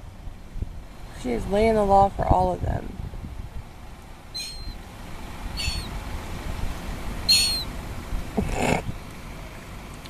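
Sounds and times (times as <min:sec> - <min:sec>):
gulls calling: 0:04.2 - 0:06.1, 0:06.7 - 0:09.0.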